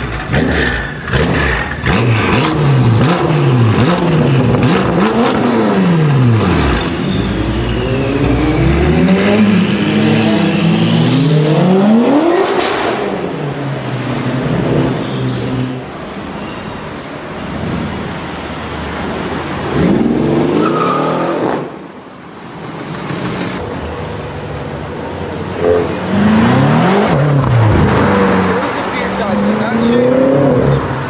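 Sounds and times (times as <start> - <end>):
car engine accelerating hard: 0.0 - 15.0, 23.6 - 31.0
road noise: 0.0 - 31.0.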